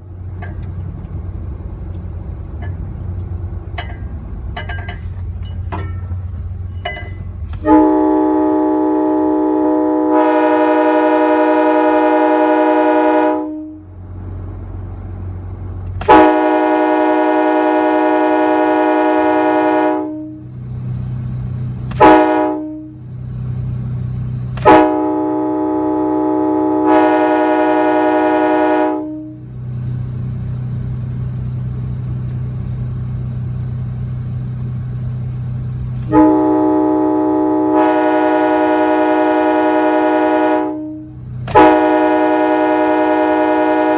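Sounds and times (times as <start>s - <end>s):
train horn blasts: 7.5s - 14.0s, 16.0s - 20.6s, 21.9s - 23.1s, 24.6s - 29.6s, 36.0s - 43.9s.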